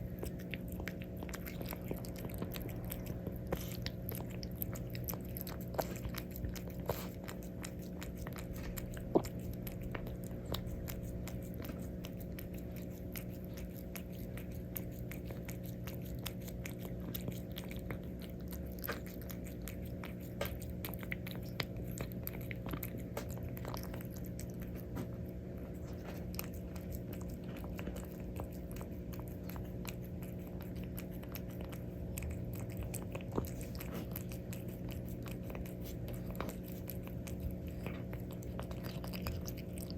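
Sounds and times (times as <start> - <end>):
cat crunching food: 0.0 - 39.9.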